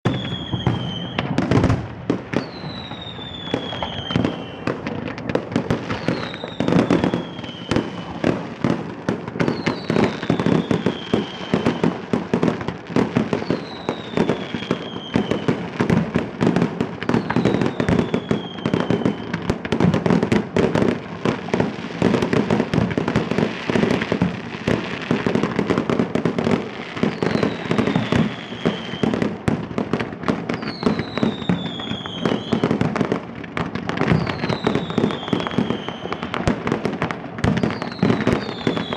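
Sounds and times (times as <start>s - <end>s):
falling firework whistle: 0.0s - 38.9s
fireworks bangs and crackling: 0.0s - 38.9s.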